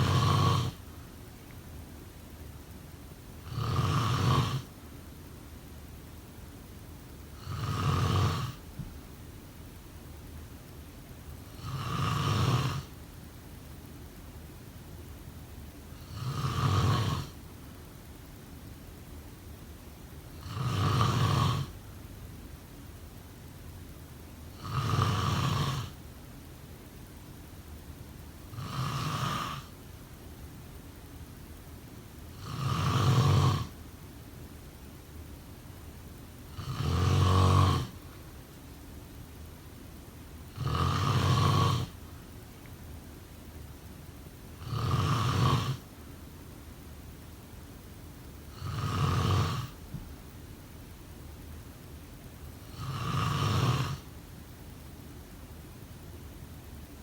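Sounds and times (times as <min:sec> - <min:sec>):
person snoring: 0:00.0 - 0:00.8, 0:03.4 - 0:04.7, 0:07.4 - 0:08.6, 0:11.6 - 0:12.9, 0:16.0 - 0:17.4, 0:20.4 - 0:21.8, 0:24.6 - 0:26.0, 0:28.5 - 0:29.7, 0:32.3 - 0:33.7, 0:36.5 - 0:38.0, 0:40.5 - 0:42.0, 0:44.6 - 0:45.8, 0:48.5 - 0:49.8, 0:52.6 - 0:54.1.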